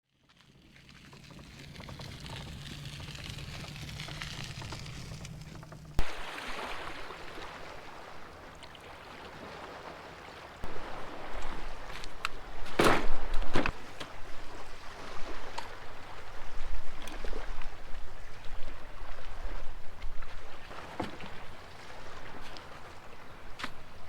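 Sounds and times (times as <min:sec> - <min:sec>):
water splashing and lapping: 0:00.2 - 0:24.0
low rumbling and knocks: 0:01.2 - 0:06.2.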